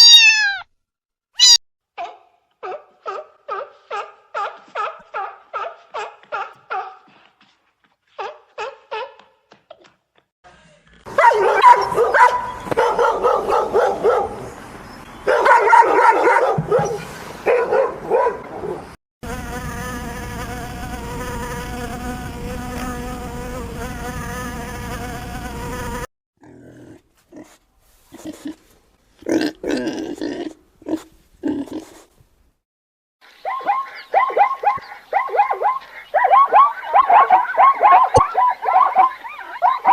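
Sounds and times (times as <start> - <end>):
steady insect-like buzz: 19.2 - 26.1
animal calls: 33.4 - 39.9.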